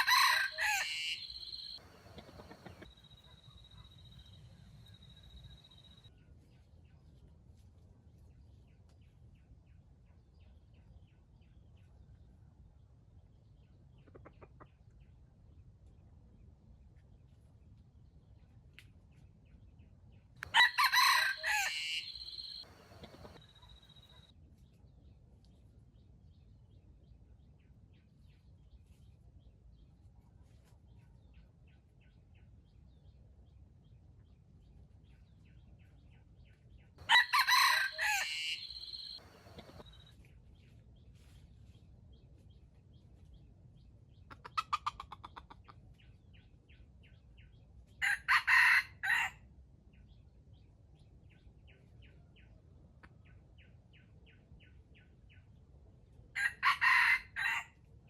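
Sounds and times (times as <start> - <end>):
rooster crowing: 0.0 - 2.8, 20.4 - 23.4, 37.0 - 39.8, 48.0 - 49.4, 56.4 - 57.7
small birds chirping: 0.0 - 7.2, 18.9 - 24.3, 33.8 - 48.0
rapid clucks: 1.2 - 3.9, 14.0 - 15.0, 22.0 - 24.2, 44.3 - 45.9.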